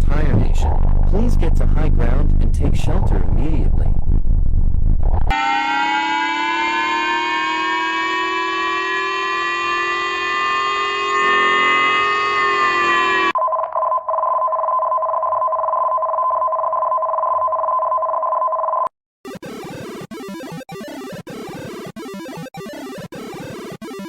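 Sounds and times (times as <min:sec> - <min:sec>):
harsh emergency alert chord: 0:05.3 - 0:13.4.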